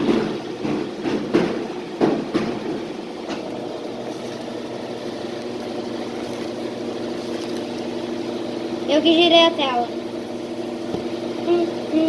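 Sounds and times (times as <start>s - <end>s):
sharp knocks: 0.0s - 3.5s
washing machine humming: 0.0s - 12.0s.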